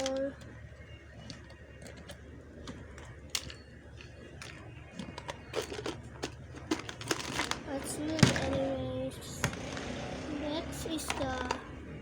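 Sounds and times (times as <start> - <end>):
plastic toys clicking: 0.0 - 0.6, 1.2 - 8.6, 11.0 - 11.7
packaging crinkling: 4.4 - 7.7.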